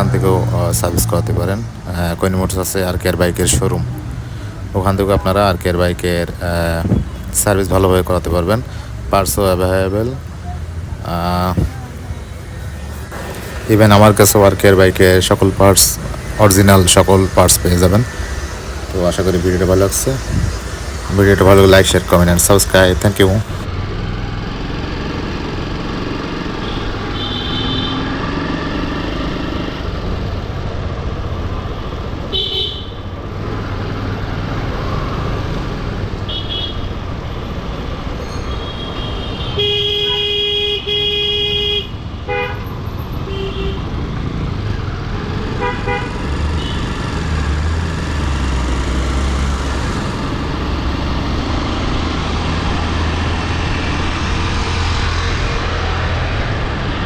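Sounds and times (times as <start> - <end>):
road traffic noise: 0.0 - 57.0
vehicle horns honking: 26.6 - 28.1, 32.3 - 33.1, 36.3 - 36.9, 38.3 - 43.9, 45.5 - 47.0.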